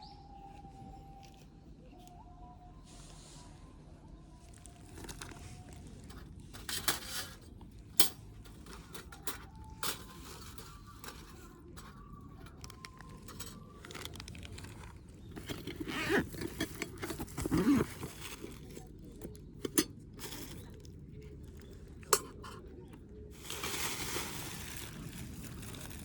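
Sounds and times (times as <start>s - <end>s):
rustling and clatter: 4.5s - 26.0s
cooking gear clicks and knocks: 4.8s - 23.1s.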